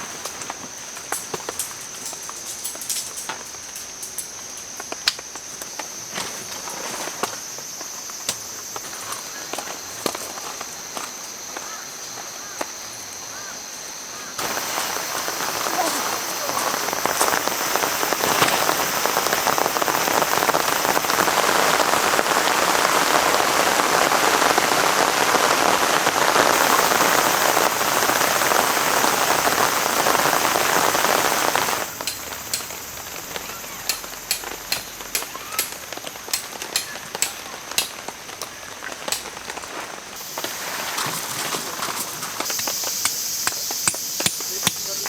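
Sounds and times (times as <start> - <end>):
heavy rain: 14.4 - 45.0
raindrops tapping: 14.4 - 45.0.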